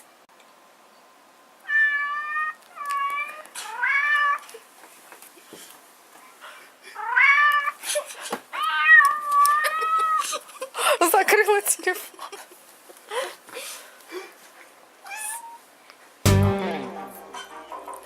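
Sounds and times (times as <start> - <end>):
cat meowing: 1.7 - 4.4.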